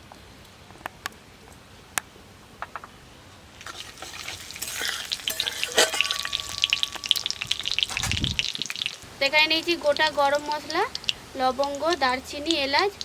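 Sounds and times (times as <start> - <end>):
seeds sizzling in hot oil: 3.6 - 13.0.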